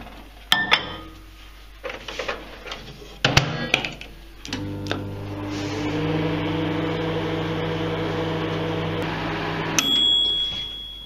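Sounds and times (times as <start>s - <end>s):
microwave shutting off click: 4.4s - 5.4s
microwave oven humming: 4.4s - 11.0s.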